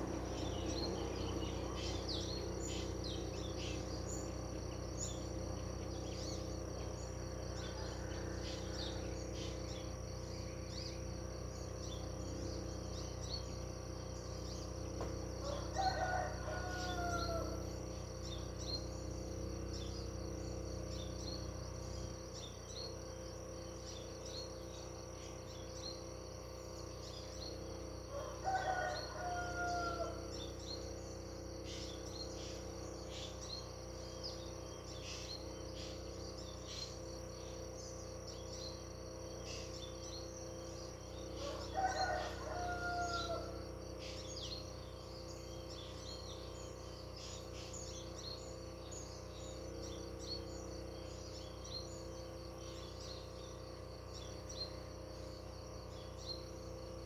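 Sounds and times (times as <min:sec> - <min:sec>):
bird chirps: 0:00.0 - 0:57.0
insect drone: 0:00.0 - 0:57.0
rooster crowing: 0:07.1 - 0:09.7, 0:15.2 - 0:18.0, 0:28.0 - 0:30.6, 0:41.1 - 0:45.0.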